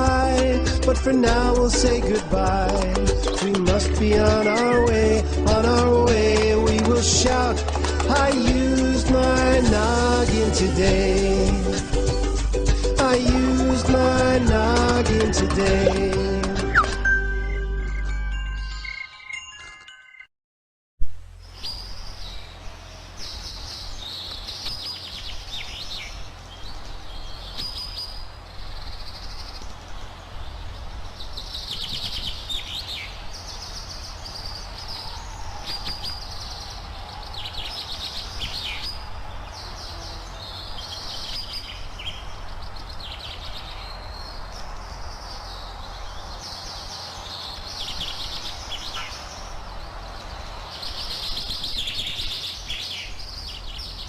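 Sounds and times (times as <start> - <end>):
birds chirping and twittering: 0.0 - 19.8, 21.4 - 54.0
steady background hiss: 21.1 - 54.0.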